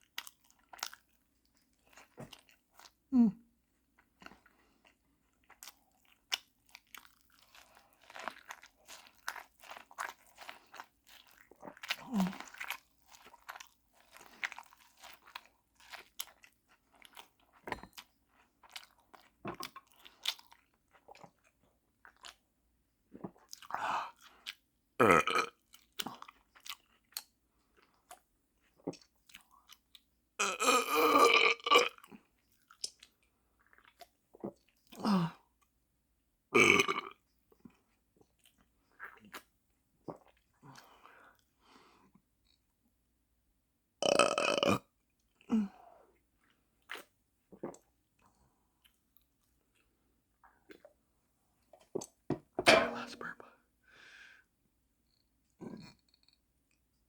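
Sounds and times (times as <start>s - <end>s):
chewing and crunching food: 0.0s - 35.8s, 36.6s - 42.8s, 44.0s - 54.3s, 55.0s - 57.0s
mouth and throat sounds: 46.9s - 47.9s, 55.5s - 56.4s.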